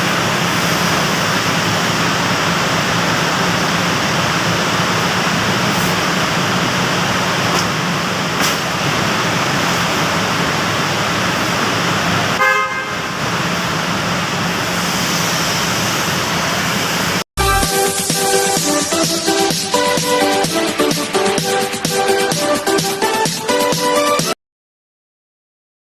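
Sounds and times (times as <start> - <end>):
rushing vehicle noise: 0.0 - 21.8
car horn toot: 12.4 - 13.1.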